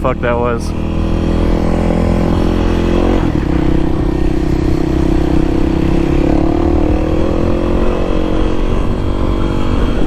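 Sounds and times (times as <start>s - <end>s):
motorcycle engine running: 0.0s - 10.0s.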